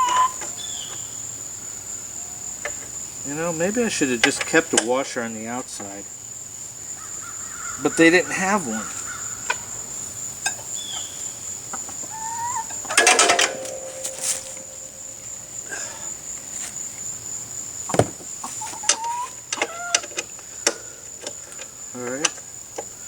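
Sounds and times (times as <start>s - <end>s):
birds calling: 0.0s - 23.0s
sharp knock: 17.9s - 18.3s.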